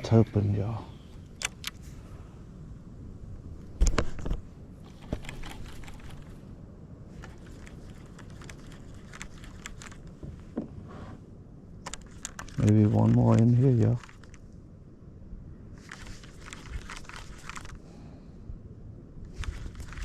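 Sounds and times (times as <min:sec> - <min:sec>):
fishing gear clicking and rattling: 0:01.2 - 0:01.8, 0:03.8 - 0:06.4, 0:07.2 - 0:10.2, 0:11.8 - 0:14.5, 0:15.8 - 0:17.9, 0:19.3 - 0:20.0.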